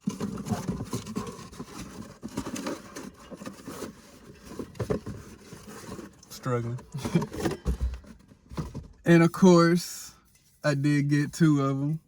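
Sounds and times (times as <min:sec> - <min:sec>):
packaging rustling and scraping: 0:00.0 - 0:09.0.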